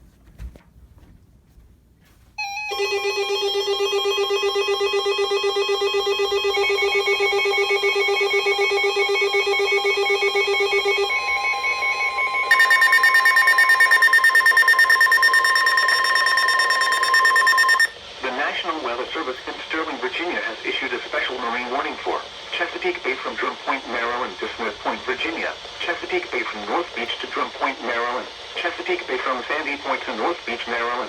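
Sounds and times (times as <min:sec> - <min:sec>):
warbling electronic alarm tone: 0:02.4 - 0:17.9
steady electronic tone: 0:10.5 - 0:17.9.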